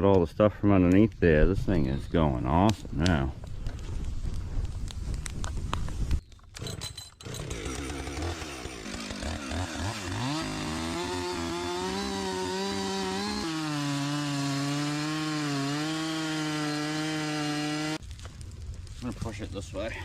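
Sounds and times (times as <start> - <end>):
small gas engine revving: 6.6 - 18.0.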